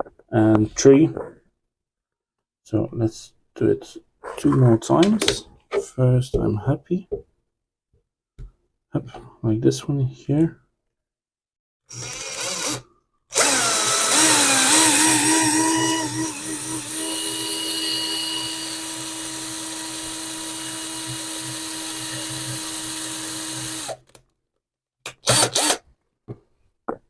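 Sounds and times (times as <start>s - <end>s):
small electric drill whining: 11.9s - 24.2s, 25.2s - 25.8s.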